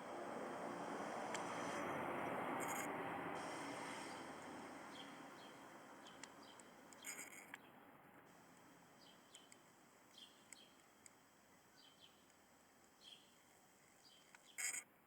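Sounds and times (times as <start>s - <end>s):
faint birdsong chirps: 3.4s - 14.8s.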